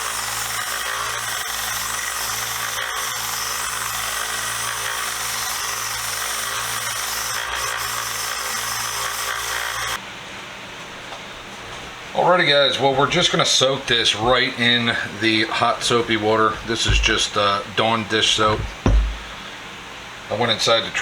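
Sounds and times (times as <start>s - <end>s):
belt sander running: 0.0s - 10.0s, 16.0s - 17.4s, 18.3s - 19.4s.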